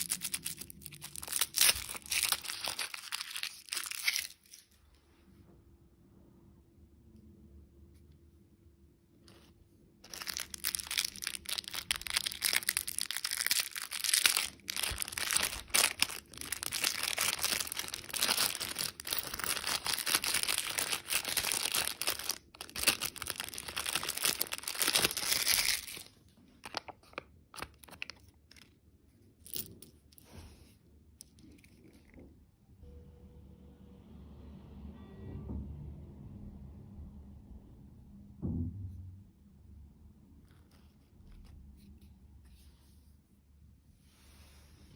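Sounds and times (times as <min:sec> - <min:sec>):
plastic wrapper crinkling: 0:00.0 - 0:04.8, 0:10.0 - 0:28.8.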